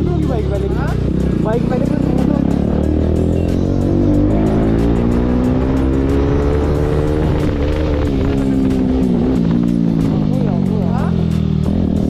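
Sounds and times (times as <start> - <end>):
background music with steady beat: 0.0 - 12.0
motorcycle engine running: 0.0 - 12.0.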